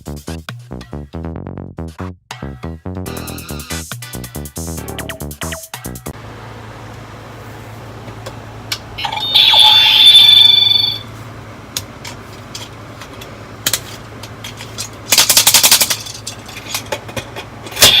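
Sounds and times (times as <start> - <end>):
toy electronic tone: 9.0 - 11.1, 17.8 - 18.0.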